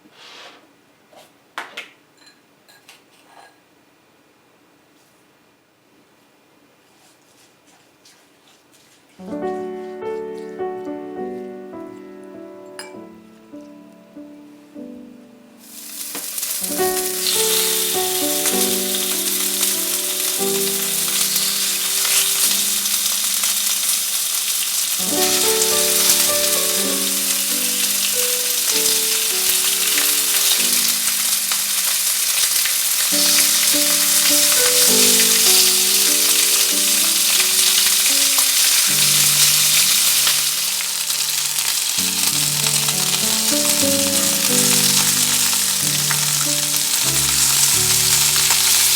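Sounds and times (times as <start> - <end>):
background music: 9.2 - 23.4, 25.0 - 31.8, 33.2 - 48.9
food sizzling in a frying pan: 15.6 - 48.9.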